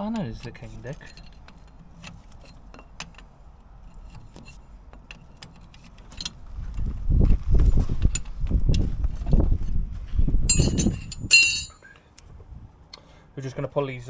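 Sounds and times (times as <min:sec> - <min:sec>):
metal fittings clinking: 0:10.5 - 0:11.8.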